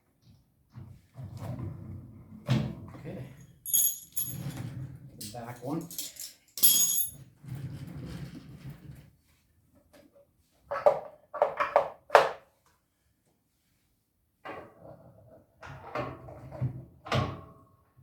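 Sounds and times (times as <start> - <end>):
light clicks and rattles: 5.2 - 7.2.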